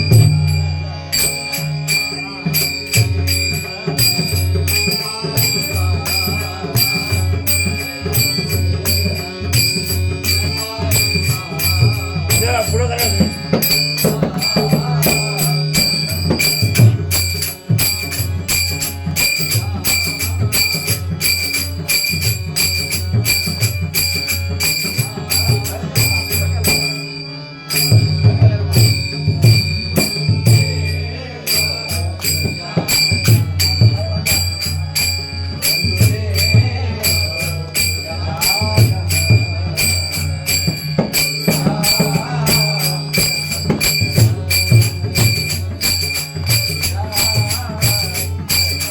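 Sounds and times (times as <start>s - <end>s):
drum: 0.0s - 0.6s, 2.6s - 27.0s, 32.2s - 48.9s
hand cymbals ringing: 0.0s - 48.9s.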